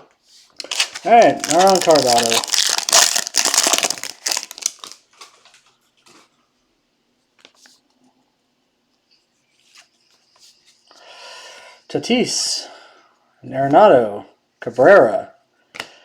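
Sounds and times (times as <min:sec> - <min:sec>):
wrapper crinkling and tearing: 0:00.6 - 0:05.6.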